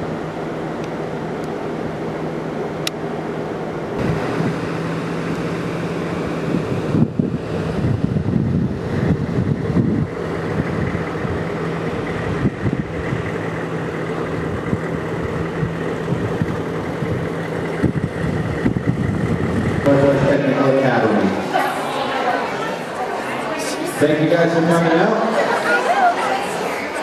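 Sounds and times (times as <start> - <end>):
steady mechanical hum: 0.0 - 27.0
wind buffeting microphone: 4.0 - 19.9.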